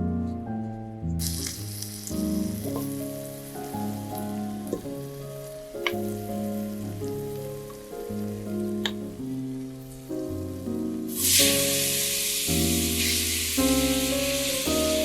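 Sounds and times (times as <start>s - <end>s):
background music sustained notes: 0.0s - 15.0s
food sizzling in a pan: 1.2s - 9.2s, 11.0s - 15.0s.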